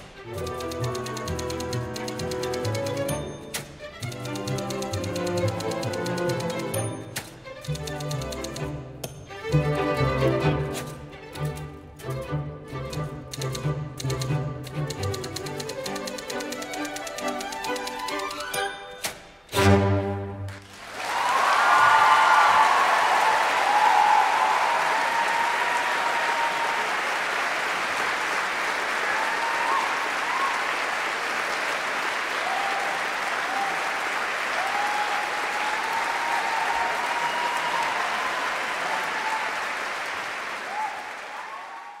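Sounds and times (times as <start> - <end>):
audience applauding: 20.4 - 42.0.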